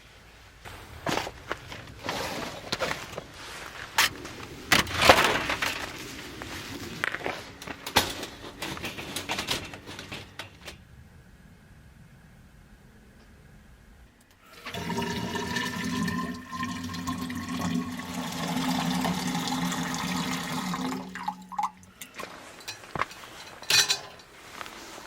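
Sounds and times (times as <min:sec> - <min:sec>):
water pouring into a container: 0:14.4 - 0:22.6.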